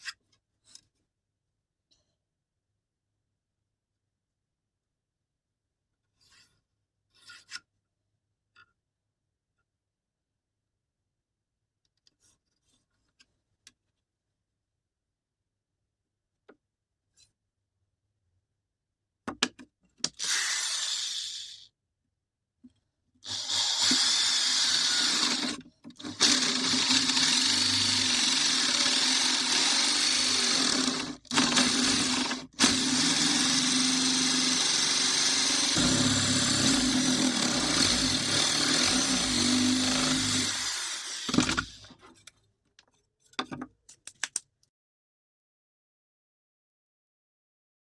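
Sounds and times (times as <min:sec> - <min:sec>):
small electric motor running: 0:20.2 - 0:21.6, 0:23.3 - 0:41.8.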